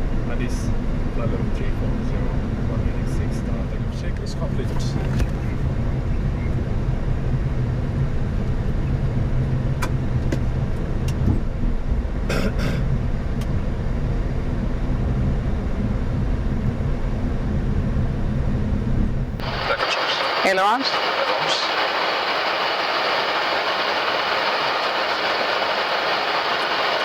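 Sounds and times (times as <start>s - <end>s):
air conditioning rush: 19.2s - 27.0s
jet engines idling: 19.3s - 27.0s.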